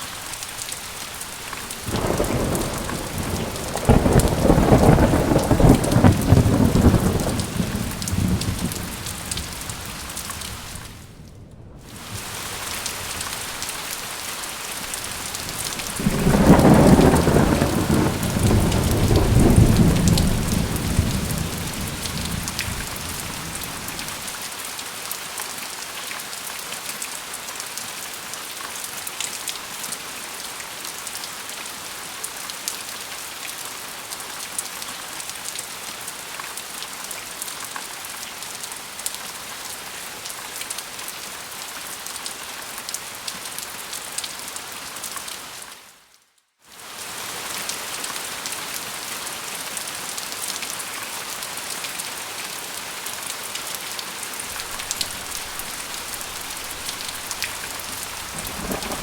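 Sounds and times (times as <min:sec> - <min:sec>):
steady rain: 0:00.0 - 0:59.0
thunder rumbling: 0:01.5 - 0:24.3, 0:54.5 - 0:59.0
rain drop ticks: 0:54.5 - 0:59.0.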